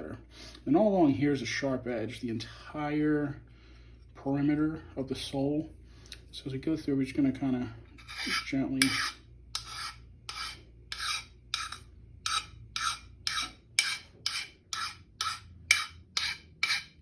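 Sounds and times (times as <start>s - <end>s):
abrasive rasping on metal edge: 8.0s - 17.0s.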